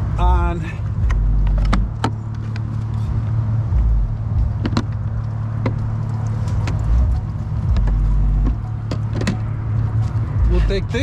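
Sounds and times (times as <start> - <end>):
low engine hum: 0.0 - 11.0
sharp clicks and knocks: 1.0 - 2.8, 3.7 - 9.6.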